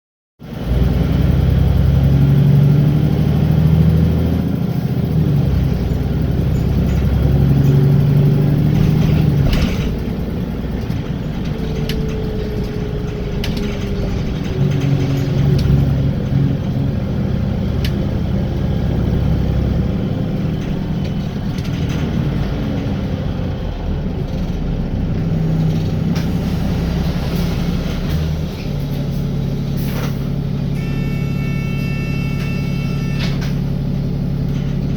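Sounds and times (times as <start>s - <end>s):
bus diesel engine pulling: 0.4s - 34.9s
sharp clicks and rattles: 6.4s - 19.4s.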